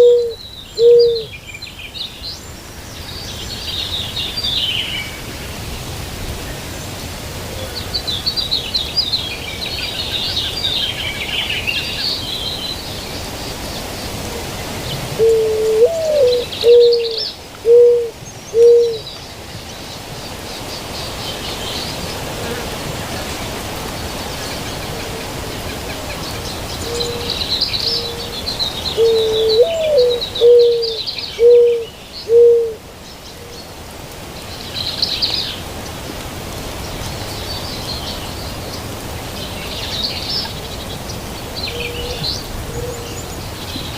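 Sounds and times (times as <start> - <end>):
dove cooing: 0.0 - 1.3, 15.1 - 19.1, 28.9 - 32.8
outdoor background noise: 0.0 - 43.9
songbirds chirping: 0.0 - 43.9.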